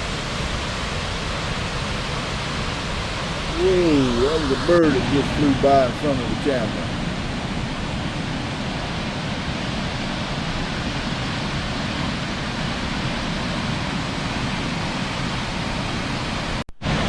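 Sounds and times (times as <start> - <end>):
waterfall rushing: 0.0 - 8.7.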